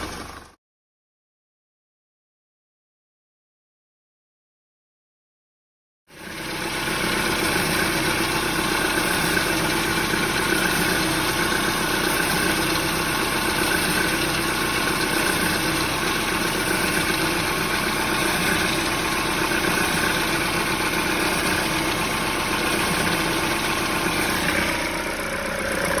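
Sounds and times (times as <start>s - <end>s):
car engine idling: 0.0s - 0.6s, 6.2s - 26.0s.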